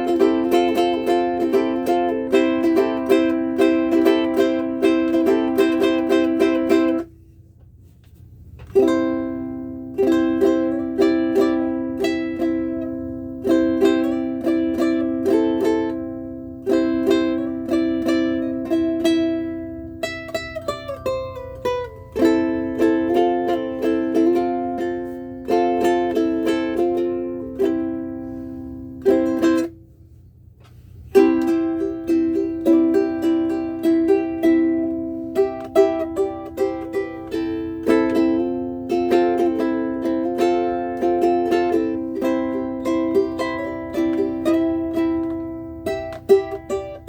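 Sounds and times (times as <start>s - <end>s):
ukulele chords and picked notes: 0.0s - 7.1s, 8.3s - 47.0s.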